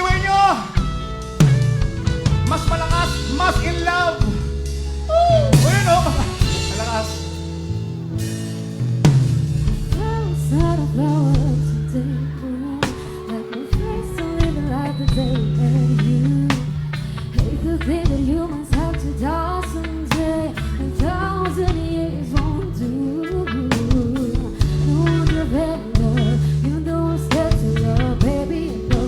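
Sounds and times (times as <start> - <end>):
bass line: 0.0 - 29.0
drum kit: 0.0 - 29.0
person singing: 10.0 - 29.0.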